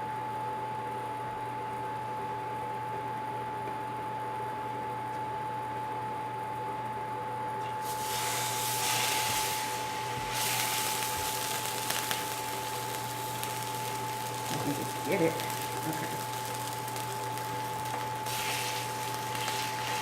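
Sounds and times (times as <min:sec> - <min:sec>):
faint electrical whine and hum: 0:00.0 - 0:20.0
oil popping: 0:07.6 - 0:20.0
fish sizzling in hot oil: 0:07.7 - 0:20.0.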